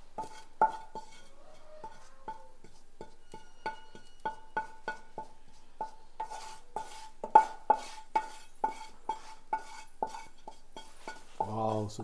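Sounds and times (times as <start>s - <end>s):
metal spoon knocking vessel: 1.9s - 6.0s.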